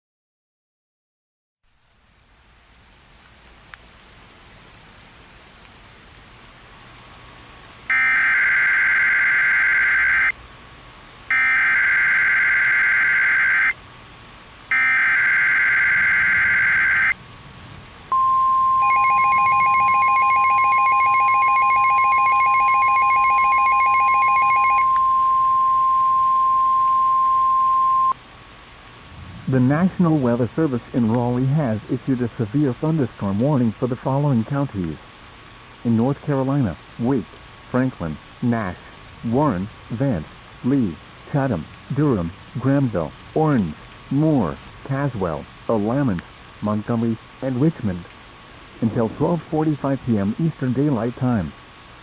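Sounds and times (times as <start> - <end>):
steady high alarm beep: 7.9 - 10.3, 11.3 - 13.7, 14.7 - 17.1, 18.2 - 28.2
digital data tone bursts: 11.3 - 13.8, 14.7 - 17.2, 18.2 - 28.2
faint radio hiss: 29.4 - 52.0.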